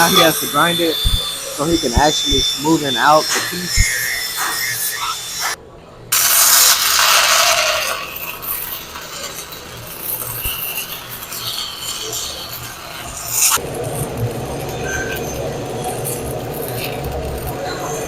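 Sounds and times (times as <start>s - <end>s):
grinder rasping on steel: 0.0s - 5.6s, 6.2s - 13.6s.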